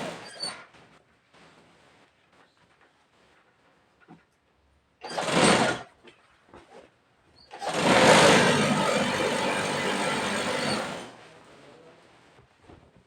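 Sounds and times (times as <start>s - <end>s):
sewing machine running: 5.1s - 5.8s, 7.6s - 11.2s.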